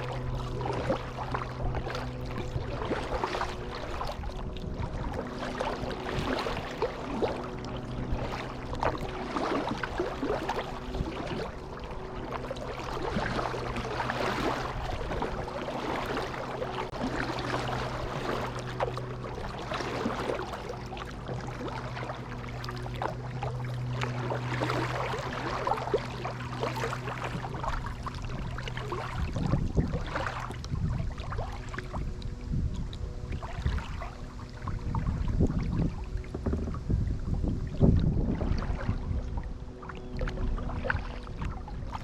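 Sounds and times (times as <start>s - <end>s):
steady low hum: 0.0s - 42.0s
water splashing off paddle: 0.0s - 42.0s.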